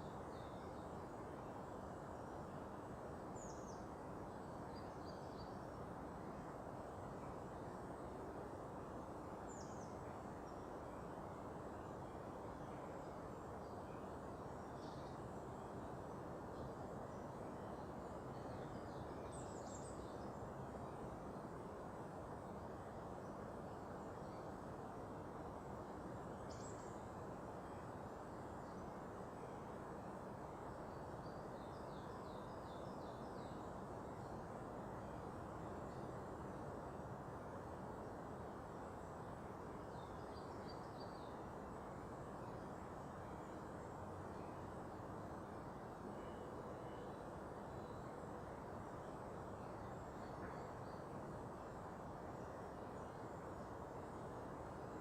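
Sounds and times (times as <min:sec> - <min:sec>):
outdoor background noise: 0:00.0 - 0:55.0
faint bird chirps: 0:38.0 - 0:55.0
faint high bird chirp: 0:46.1 - 0:48.3, 0:49.0 - 0:51.2.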